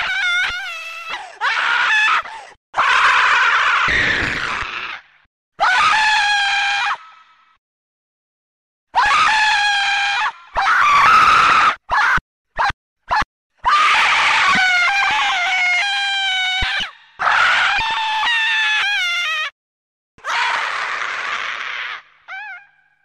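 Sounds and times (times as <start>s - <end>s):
woman screaming: 9.0s - 19.5s.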